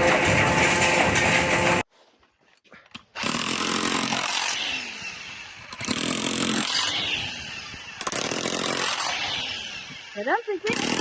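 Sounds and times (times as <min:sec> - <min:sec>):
power tool running: 0:03.2 - 0:11.0.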